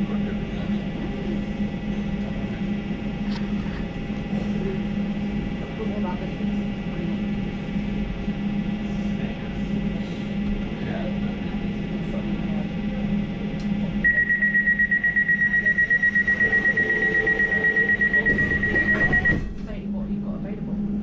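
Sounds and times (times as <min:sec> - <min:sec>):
train humming: 0:00.0 - 0:21.0
door warning beeping: 0:14.0 - 0:19.6.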